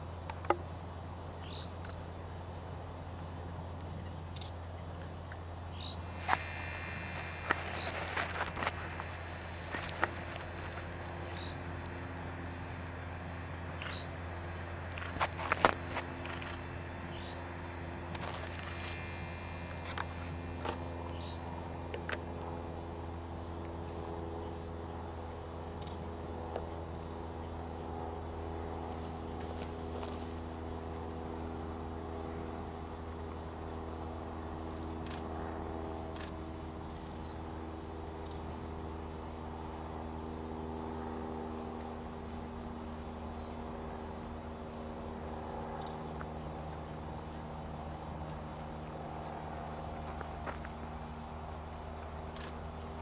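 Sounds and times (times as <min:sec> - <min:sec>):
steady low hum: 0:00.0 - 0:53.0
camcorder mechanism hum: 0:05.8 - 0:22.6, 0:52.3 - 0:52.6.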